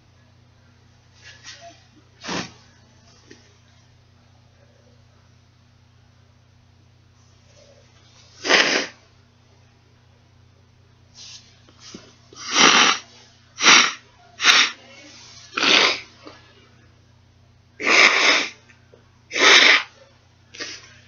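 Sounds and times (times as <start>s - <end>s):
person sneezing: 1.3s - 2.7s, 8.4s - 9.0s, 12.4s - 14.8s, 15.5s - 16.2s, 17.8s - 18.6s, 19.3s - 20.0s, 20.6s - 20.9s.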